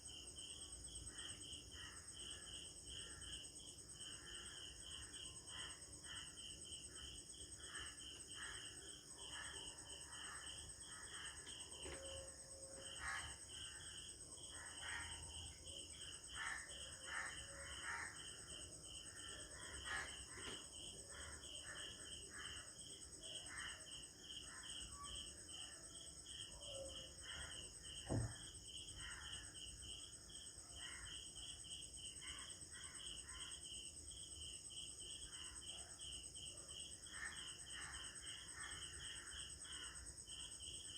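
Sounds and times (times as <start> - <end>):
insects chirping: 0.0 - 40.9
sharp knock: 28.0 - 28.4.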